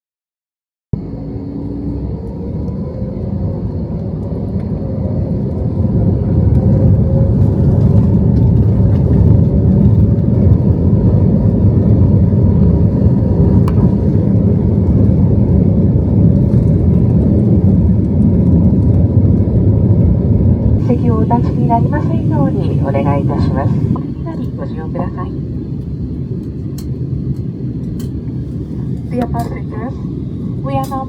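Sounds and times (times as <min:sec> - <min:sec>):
jet engines rumbling in cabin: 0:01.0 - 0:31.0.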